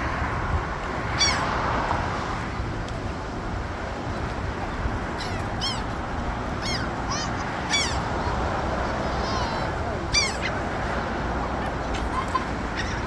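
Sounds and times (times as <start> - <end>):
steady background noise: 0.0 - 13.0
seagulls calling: 1.2 - 1.6, 4.6 - 13.0.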